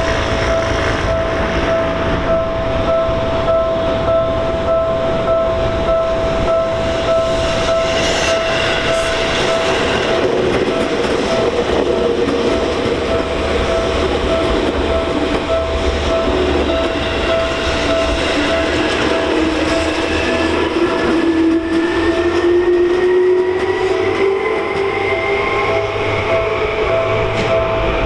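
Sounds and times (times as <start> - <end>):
level crossing bell ringing: 0.0 - 21.1
train rumbling past: 0.0 - 28.0
wheel clatter on rails: 0.0 - 28.0.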